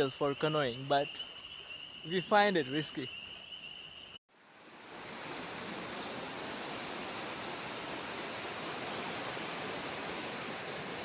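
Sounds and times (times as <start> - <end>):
floodwater rushing: 4.7 - 11.0.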